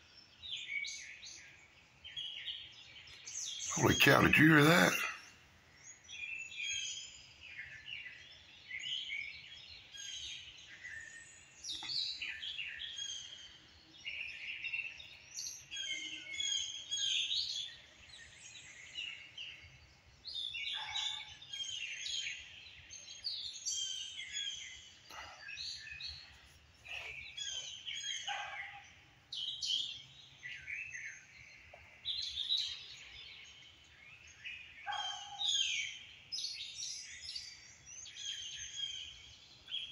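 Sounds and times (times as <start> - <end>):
birds chirping and calling: 23.0 - 39.9.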